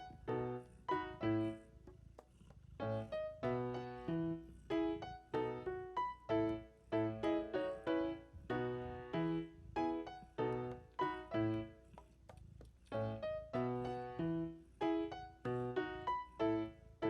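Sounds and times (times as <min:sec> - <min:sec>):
bouncy piano tune: 0:00.0 - 0:01.7, 0:02.8 - 0:11.8, 0:12.9 - 0:17.0.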